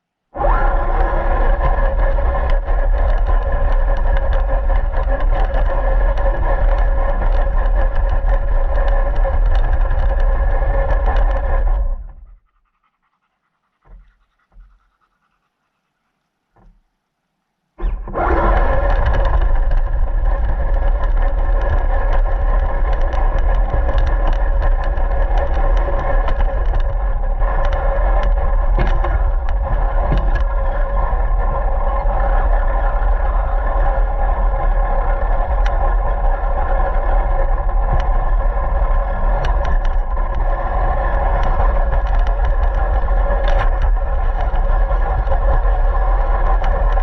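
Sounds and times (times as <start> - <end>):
toy car motor whine: 0.4 - 12.0, 17.8 - 47.0
clicks and knocks: 17.8 - 31.0
loud rumble: 17.8 - 47.0.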